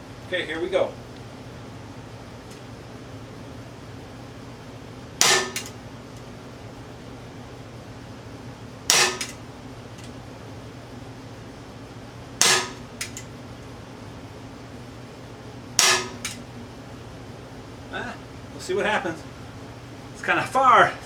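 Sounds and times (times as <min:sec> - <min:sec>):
pistol shot crack: 0:05.2 - 0:05.8, 0:08.9 - 0:09.4, 0:12.4 - 0:13.2, 0:15.8 - 0:16.4.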